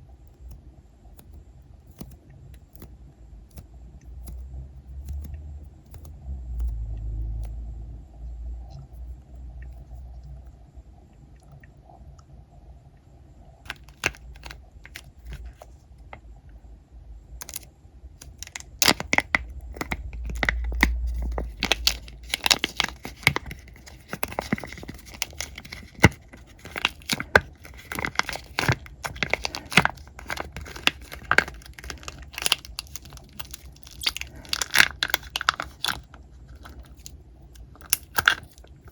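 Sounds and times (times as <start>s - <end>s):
squishy toy crackling and crinkling: 13.6s - 15.8s, 17.4s - 38.9s
hands handling toys rumble: 13.7s - 16.2s, 17.4s - 38.9s.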